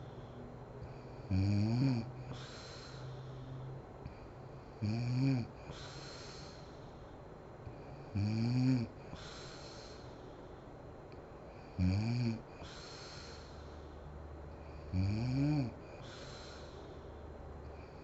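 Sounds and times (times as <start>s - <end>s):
woman snoring: 0.9s - 2.6s, 4.8s - 6.0s, 7.9s - 9.2s, 11.7s - 13.4s, 14.6s - 16.7s
breathy exhale: 2.2s - 4.8s, 5.6s - 8.2s, 9.0s - 10.7s, 12.5s - 14.9s, 15.7s - 18.0s.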